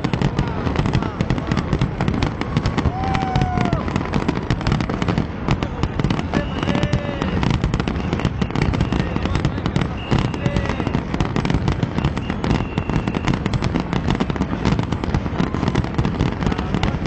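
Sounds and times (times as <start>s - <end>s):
firework whistles: 0.0s - 5.2s, 5.8s - 16.8s
fireworks bangs and crackling: 0.0s - 17.0s.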